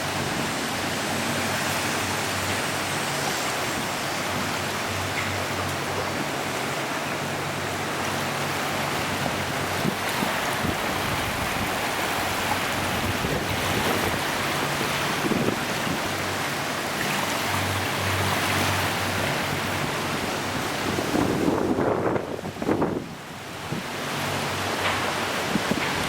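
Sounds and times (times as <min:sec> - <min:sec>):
waves and surf: 0:00.0 - 0:26.0
wind buffeting microphone: 0:08.8 - 0:16.4, 0:17.7 - 0:26.0.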